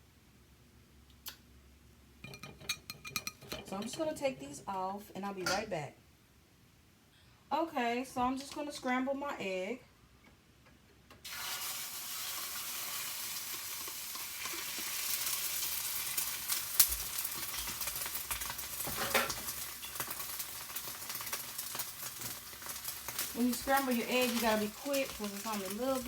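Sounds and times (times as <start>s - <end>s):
spatula stirring: 2.2s - 4.7s
egg sizzling in a hot pan: 11.2s - 26.0s.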